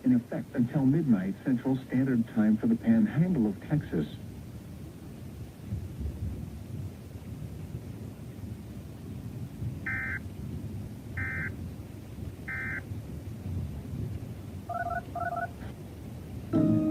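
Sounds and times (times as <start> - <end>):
short beeps: 9.9 - 10.2, 11.2 - 11.5, 12.5 - 12.8, 14.7 - 15.6.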